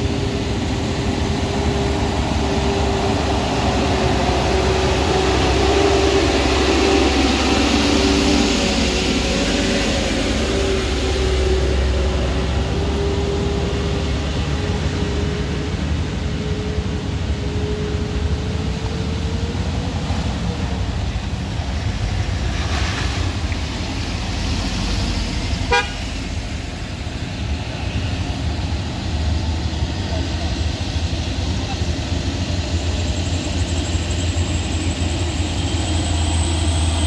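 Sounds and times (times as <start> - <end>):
engine whine: 0.0 - 37.0
traffic engines rumbling: 0.0 - 37.0
vehicle horn toot: 25.7 - 26.1.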